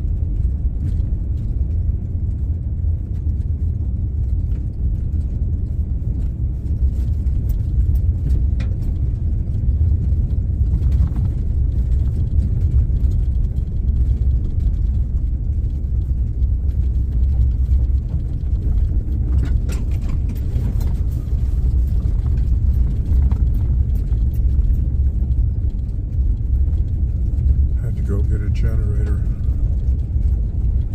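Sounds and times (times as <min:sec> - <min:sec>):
engine and road noise rumble: 0:00.0 - 0:30.9.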